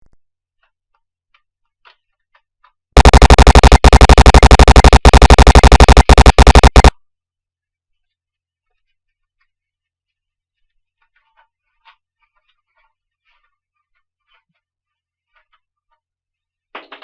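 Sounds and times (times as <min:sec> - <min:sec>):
automatic rifle gunfire: 0:03.0 - 0:06.9.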